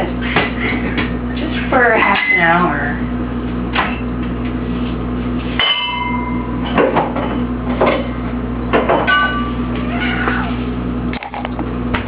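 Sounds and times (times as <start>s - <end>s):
steady low hum: 0.0s - 12.0s
dishes tinkling: 5.6s - 6.4s
dishes clattering: 5.6s - 9.4s.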